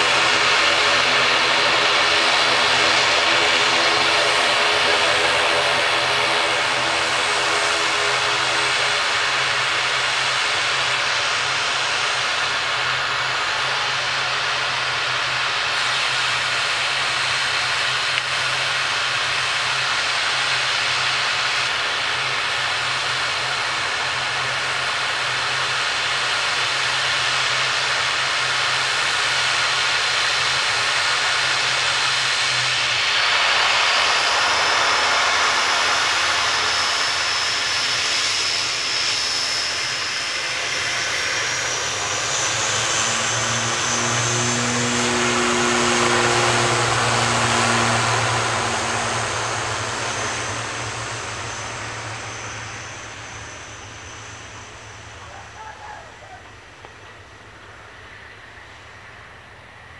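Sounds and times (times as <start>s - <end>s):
aircraft engines whining: 0.0s - 59.9s
low hum: 40.0s - 55.7s.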